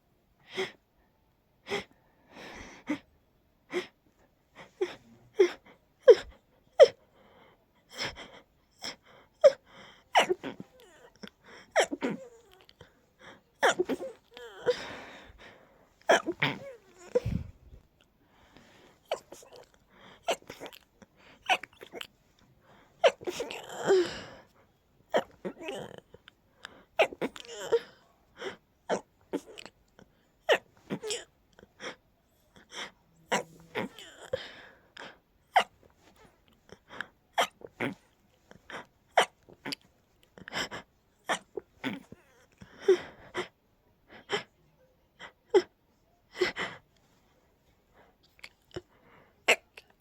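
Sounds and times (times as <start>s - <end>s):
breathy sounds: 7.2s - 24.6s
stifled sneezes: 7.9s - 17.8s, 18.6s - 24.5s, 25.1s - 43.6s, 48.3s - 50.0s.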